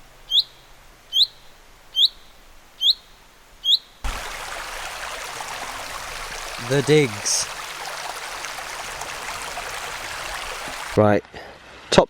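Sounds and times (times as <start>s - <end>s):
steady rushing hiss: 4.1s - 11.0s.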